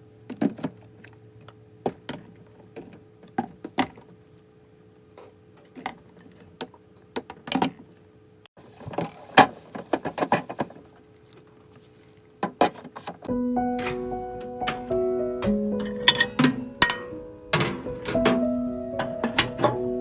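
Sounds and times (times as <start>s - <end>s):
background music: 13.3s - 20.0s
household objects clicking and clinking: 13.8s - 20.0s.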